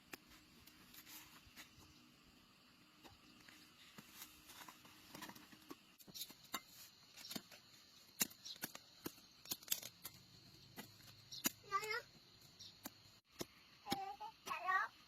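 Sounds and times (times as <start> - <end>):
maize cobs crackling and clicking: 3.0 - 15.0.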